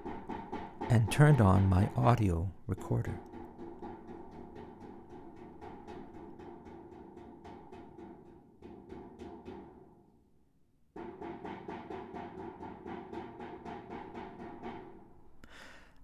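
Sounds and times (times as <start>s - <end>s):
tapping ringing through metal duct: 0.0s - 7.9s.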